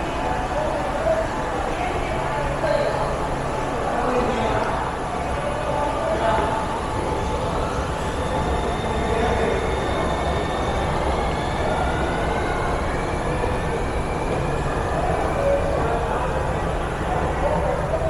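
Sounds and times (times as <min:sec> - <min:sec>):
train rumbling: 0:06.0 - 0:18.0.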